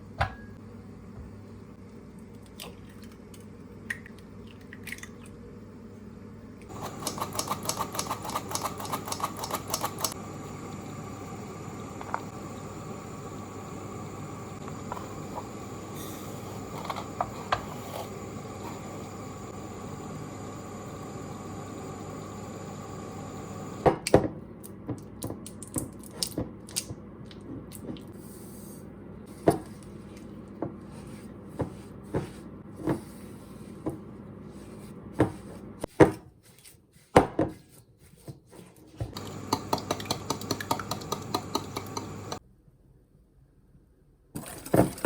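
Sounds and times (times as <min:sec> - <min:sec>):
steady hum: 0:05.5 - 0:24.0, 0:39.2 - 0:42.4
rapid clicking: 0:06.7 - 0:10.2, 0:39.2 - 0:42.4
utensils knocking against bowls: 0:39.2 - 0:42.4.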